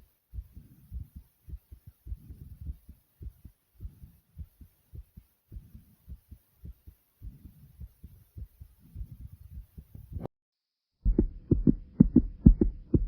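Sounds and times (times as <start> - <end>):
heartbeat thumps: 0.3 - 10.3, 11.0 - 13.0
soft low rumble: 11.0 - 13.0.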